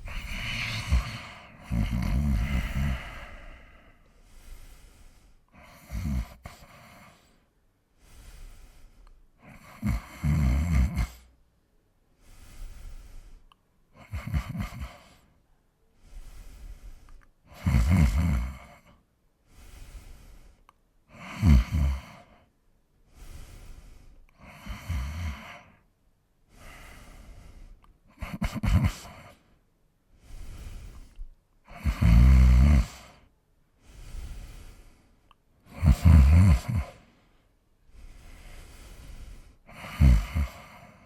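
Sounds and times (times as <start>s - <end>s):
man snoring: 0.0s - 7.3s, 8.0s - 11.3s, 14.0s - 15.2s, 16.1s - 22.4s, 23.1s - 25.8s, 26.6s - 29.4s, 30.2s - 33.3s, 33.9s - 35.0s, 35.7s - 37.1s, 37.9s - 41.0s
breathy breaths: 0.0s - 41.0s.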